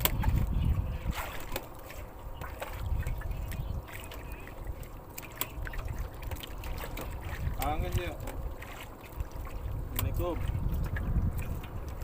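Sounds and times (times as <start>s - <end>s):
water sloshing: 0.0s - 12.0s
wind rumbling on microphone: 0.0s - 12.0s.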